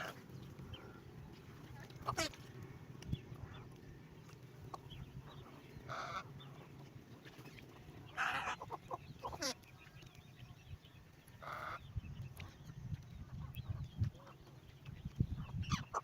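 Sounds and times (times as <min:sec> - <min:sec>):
fowl squawking: 0:02.0 - 0:02.4, 0:08.2 - 0:09.6.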